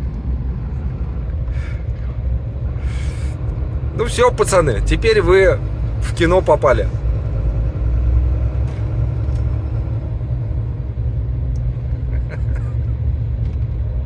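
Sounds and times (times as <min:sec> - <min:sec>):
truck diesel engine running: 0:00.0 - 0:14.0.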